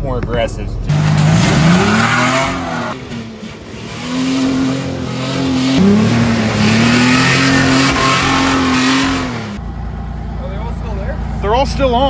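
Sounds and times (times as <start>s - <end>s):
tires rushing over mud: 0.9s - 9.6s
truck engine revving: 0.9s - 12.0s.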